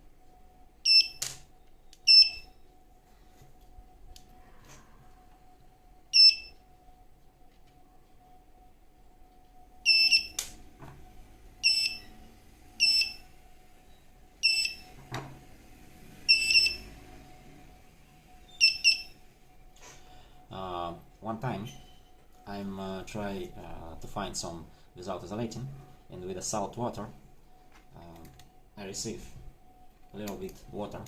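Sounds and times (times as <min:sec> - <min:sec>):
high-pitched detector beeps: 0:00.8 - 0:02.7, 0:05.5 - 0:06.6, 0:09.8 - 0:10.4, 0:11.6 - 0:14.9, 0:16.3 - 0:16.9, 0:18.4 - 0:19.2.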